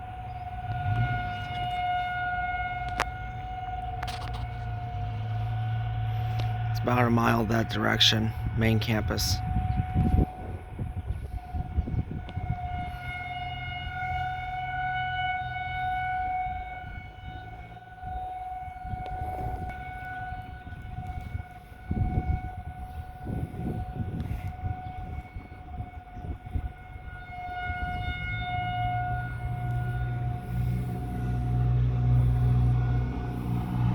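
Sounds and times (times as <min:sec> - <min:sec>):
low rumble: 0:00.0 - 0:14.7, 0:16.2 - 0:33.9
rotating warning siren: 0:00.0 - 0:33.9.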